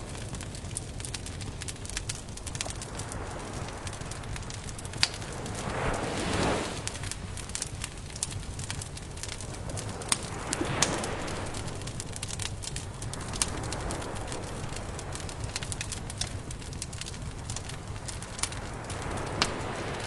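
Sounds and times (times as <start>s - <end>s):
campfire crackling: 0.0s - 20.0s
low rumble: 0.0s - 20.0s
sharp pops and snaps: 15.5s - 19.8s.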